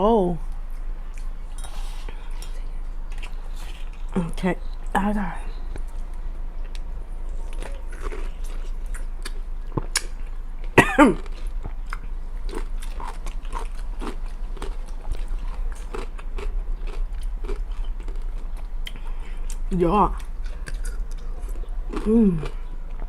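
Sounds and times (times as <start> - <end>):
pickle crunching while chewed: 5.8 - 23.0.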